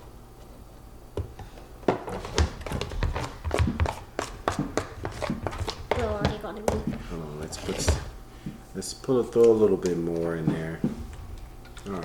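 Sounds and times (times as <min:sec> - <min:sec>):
stirrer tapping plastic containers: 0:01.9 - 0:08.6.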